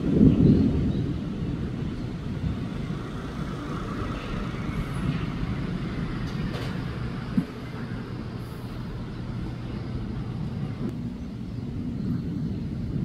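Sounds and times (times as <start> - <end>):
rolling thunder: 0.0 - 7.6.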